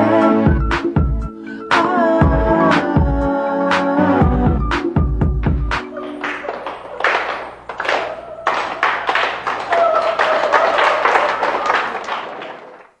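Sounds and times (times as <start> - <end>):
audience applauding and cheering: 6.0 - 13.0
high shouts: 7.9 - 12.0.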